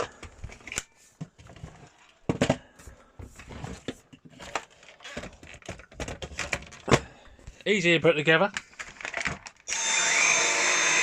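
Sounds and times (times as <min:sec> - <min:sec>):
plastic parts clicking and knocking: 0:00.0 - 0:07.2, 0:08.4 - 0:09.7.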